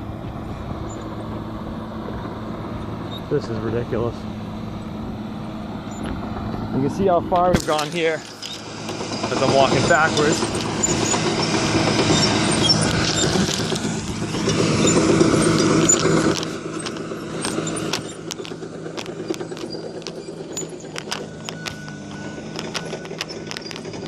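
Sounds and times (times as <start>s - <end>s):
engine running: 0.0s - 24.0s
light clicks and rattles: 7.4s - 24.0s.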